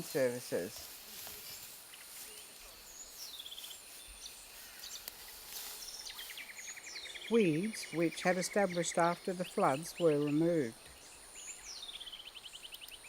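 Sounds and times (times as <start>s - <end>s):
birds chirping: 0.0s - 13.0s
faint high insect drone: 0.0s - 13.0s
high bird calls: 0.0s - 13.0s.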